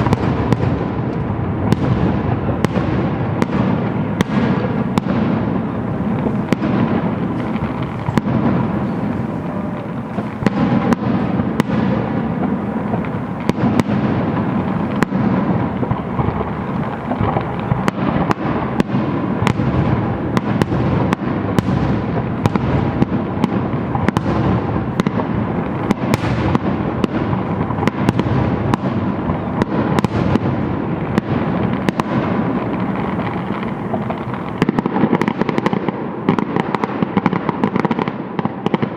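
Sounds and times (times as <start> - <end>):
fireworks rumble and crackle: 0.0 - 38.9
fireworks shell bursts: 4.3 - 18.5.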